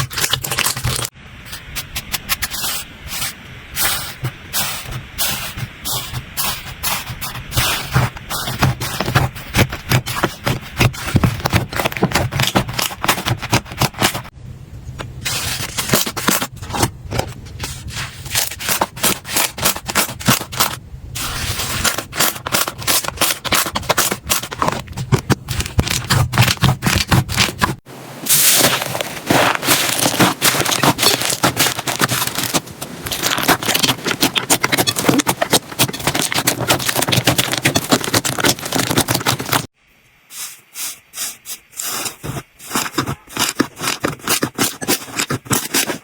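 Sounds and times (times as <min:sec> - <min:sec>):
slime squished crackling: 0:28.4 - 0:39.6.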